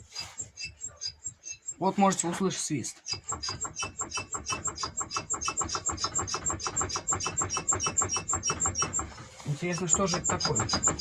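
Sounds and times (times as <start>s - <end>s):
wheel hub whistling chirps: 3.0s - 9.0s.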